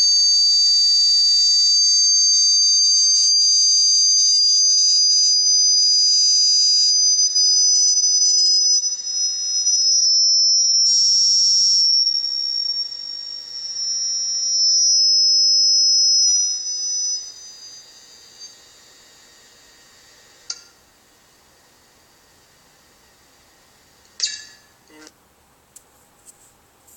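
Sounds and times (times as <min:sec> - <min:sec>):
high-pitched whistling tones: 0:00.0 - 0:20.8
sharp click: 0:20.5 - 0:20.8, 0:24.1 - 0:24.6.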